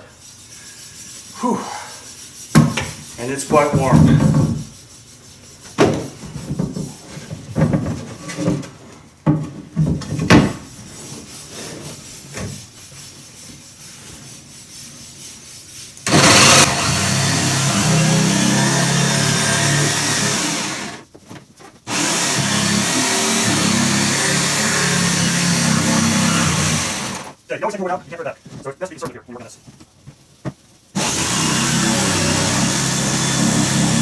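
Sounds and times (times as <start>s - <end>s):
jigsaw cutting plywood: 16.1s - 21.0s, 21.9s - 27.4s, 31.0s - 34.0s.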